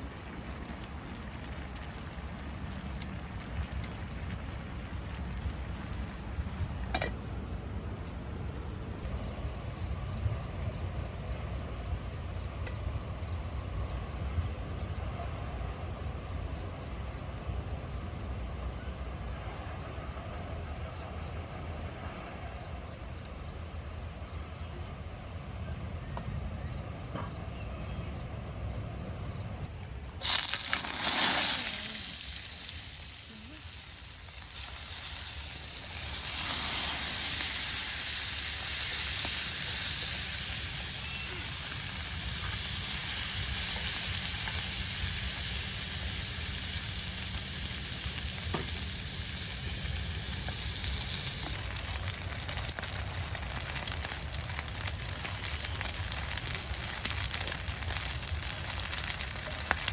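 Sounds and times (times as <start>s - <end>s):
food frying in oil: 0.0s - 9.0s, 30.2s - 59.9s.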